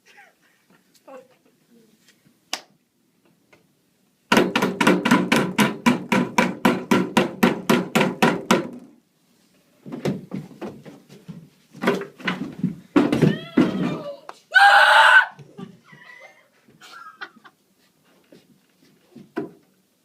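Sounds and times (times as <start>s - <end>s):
sharp knocks: 4.3s - 8.9s.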